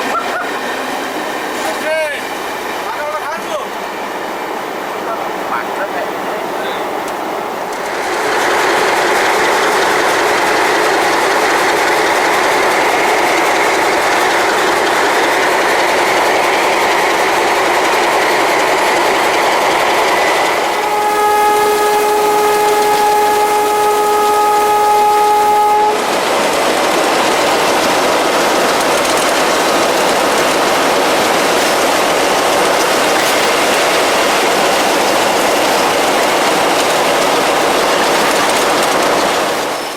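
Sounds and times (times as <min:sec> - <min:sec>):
train clattering on rails: 0:00.0 - 0:39.9
locomotive air horn: 0:20.7 - 0:26.1.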